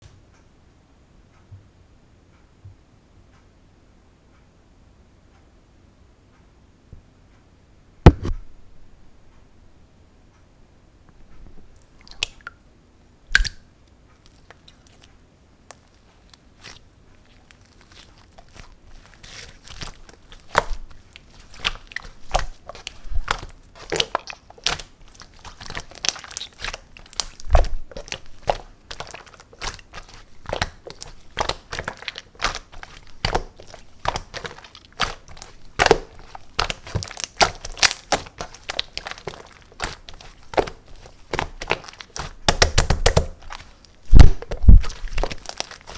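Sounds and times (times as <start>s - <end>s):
slime sticky clicks and pops: 13.3s - 13.6s, 21.6s - 45.9s.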